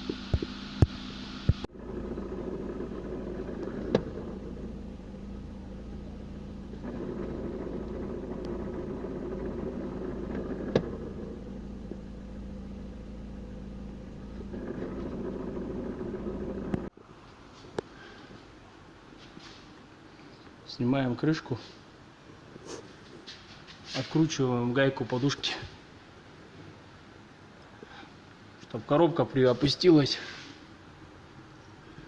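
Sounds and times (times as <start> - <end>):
car engine idling: 0.0 - 17.2
gearbox knocking: 1.5 - 16.9.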